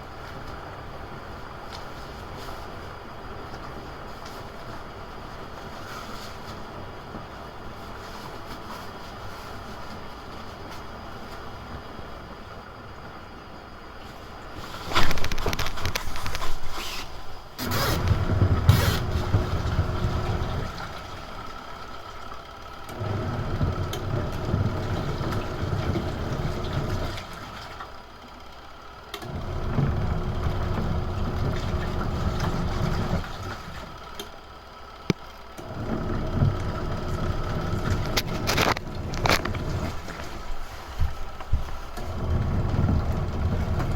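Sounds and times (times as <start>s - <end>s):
washing machine motor rumbling: 0.0s - 43.9s.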